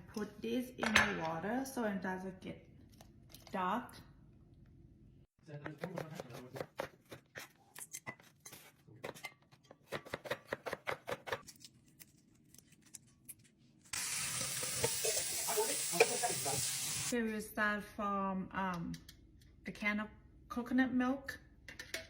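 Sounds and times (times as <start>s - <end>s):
knife chopping on cutting board: 5.6s - 7.5s, 9.9s - 11.4s
hot pan sizzling: 13.9s - 17.2s.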